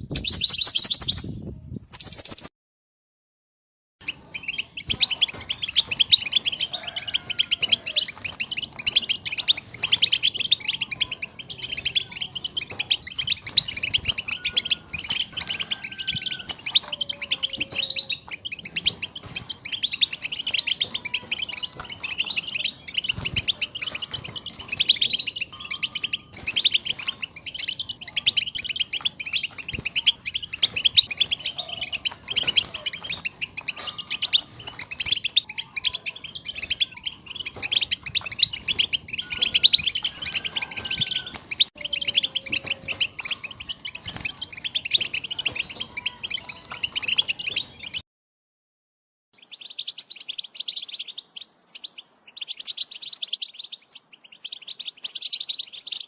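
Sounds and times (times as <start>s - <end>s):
goldfinches twittering: 4.0s - 48.0s.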